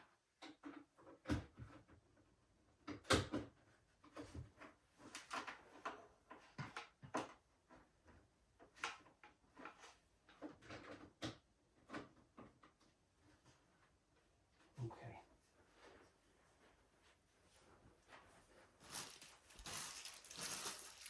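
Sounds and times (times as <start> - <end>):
objects handled knocking and rustling: 18.0 - 21.0.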